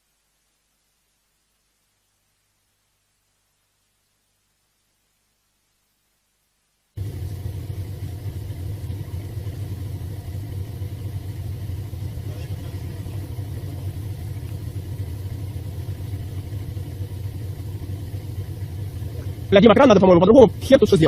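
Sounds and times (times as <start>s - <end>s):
heavy machinery engine drone: 7.0s - 21.0s.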